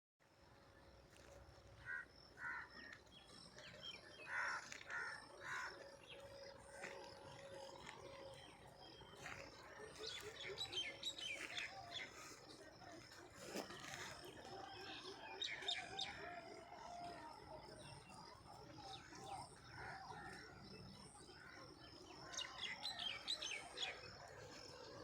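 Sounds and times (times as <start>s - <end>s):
crows cawing: 1.8s - 3.0s, 4.2s - 5.8s.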